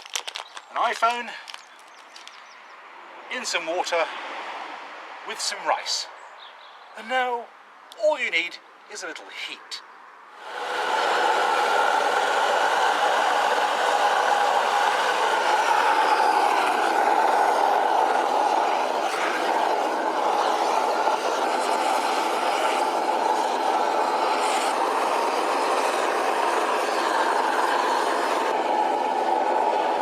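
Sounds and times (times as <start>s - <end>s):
rushing burner noise: 10.4s - 30.0s.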